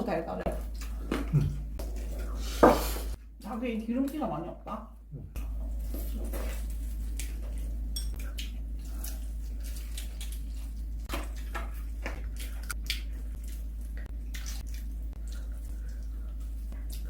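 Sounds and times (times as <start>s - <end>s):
steady low hum: 0.0s - 17.0s
chewing with wet smacking: 0.5s - 2.4s, 5.4s - 17.0s.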